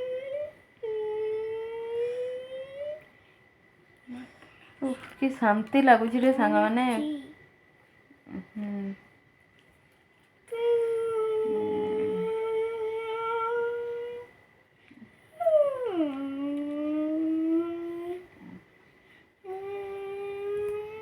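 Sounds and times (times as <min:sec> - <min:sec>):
person humming held notes: 0:00.0 - 0:03.0, 0:10.5 - 0:14.3, 0:15.4 - 0:18.6, 0:19.4 - 0:21.0
faint high whine: 0:00.0 - 0:21.0.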